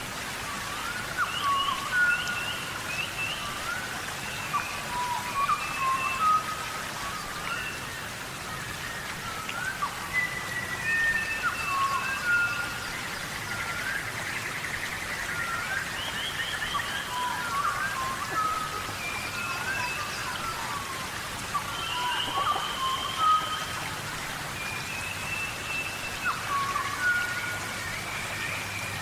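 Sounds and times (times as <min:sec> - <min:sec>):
rain falling steadily: 0:00.0 - 0:29.0
animal calls and trills: 0:15.0 - 0:29.0.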